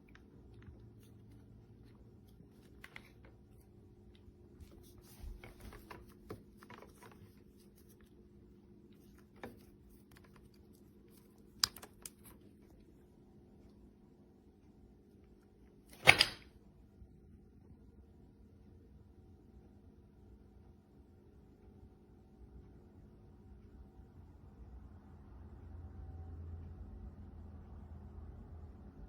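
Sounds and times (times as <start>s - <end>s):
light clicks and small knocks: 0.0s - 13.8s
faint electrical hum: 0.0s - 29.0s.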